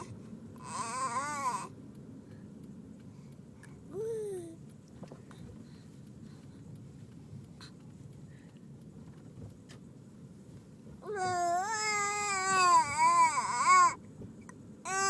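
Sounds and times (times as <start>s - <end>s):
infant crying: 0.6s - 1.7s, 11.0s - 14.0s.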